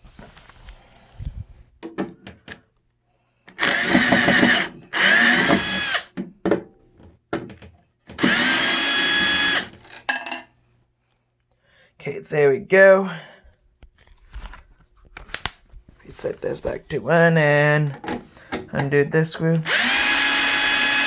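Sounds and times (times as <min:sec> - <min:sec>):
power drill motor whine: 0:03.6 - 0:06.1, 0:08.2 - 0:09.7, 0:19.6 - 0:21.0.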